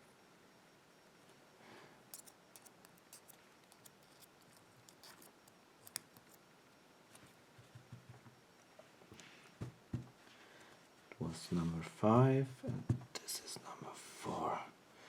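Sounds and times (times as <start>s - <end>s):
small metal clicks and ticks: 2.1s - 6.4s.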